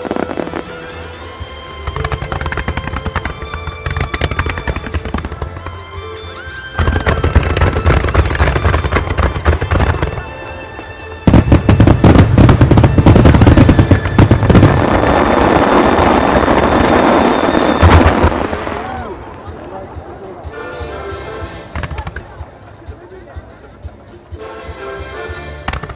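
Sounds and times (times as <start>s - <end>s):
firework crackling: 0.0s - 20.2s
firework shells bursting: 2.0s - 5.7s.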